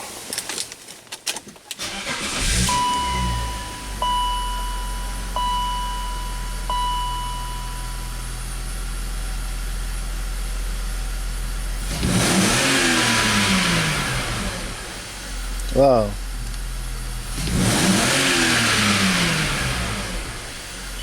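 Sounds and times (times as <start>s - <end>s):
car engine idling with misfire: 1.8s - 21.0s
high beep: 2.6s - 8.7s.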